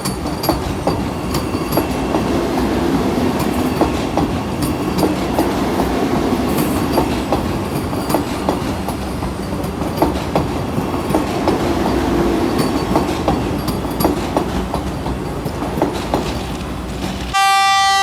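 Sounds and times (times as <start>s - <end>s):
wheels clacking over rail joints: 0.0s - 17.4s
train rumbling past: 0.0s - 18.0s
loud train horn: 17.3s - 18.0s.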